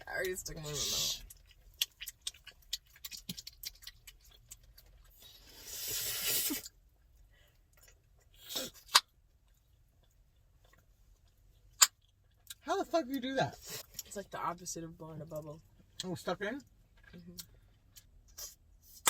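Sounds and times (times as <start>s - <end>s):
gum chewing and smacking: 0.2s - 12.6s.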